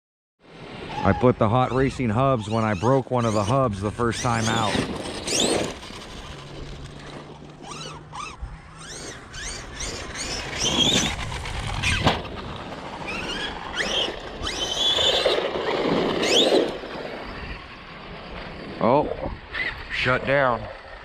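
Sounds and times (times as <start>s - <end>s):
electric motors whining: 0.7s - 21.0s
toy truck landing thump: 11.9s - 12.4s.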